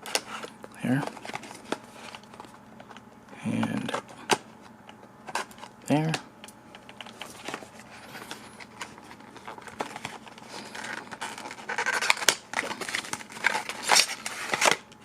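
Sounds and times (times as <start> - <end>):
cardboard and paper scraping: 7.2 - 14.8.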